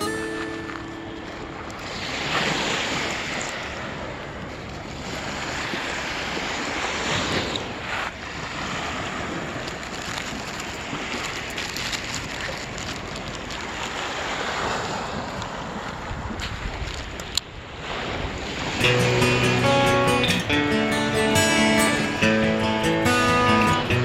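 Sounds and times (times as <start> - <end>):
waves breaking on shore: 0.0 - 24.0
wind buffeting microphone: 14.2 - 24.0.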